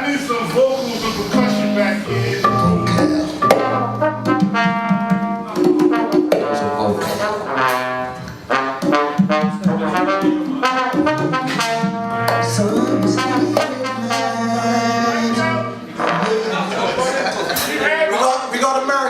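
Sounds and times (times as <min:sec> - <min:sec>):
brass horns playing held notes: 0:01.3 - 0:16.7
drum and percussion hits: 0:02.8 - 0:07.9.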